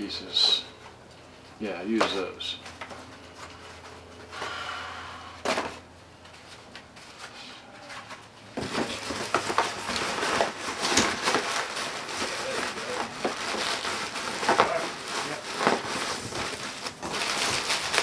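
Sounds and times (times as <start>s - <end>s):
cardboard crushing and crackling: 8.5s - 18.0s.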